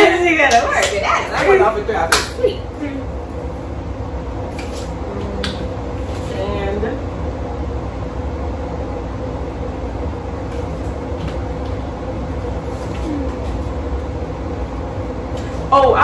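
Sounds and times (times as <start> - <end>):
constant hum: 0.0 - 16.0.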